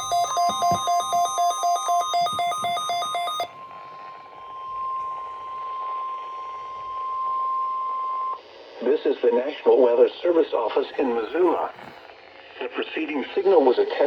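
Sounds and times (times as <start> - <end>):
electronic alert beeps: 0.0 - 3.5
steady alarm tone: 0.0 - 8.8
radio hiss: 8.4 - 14.0.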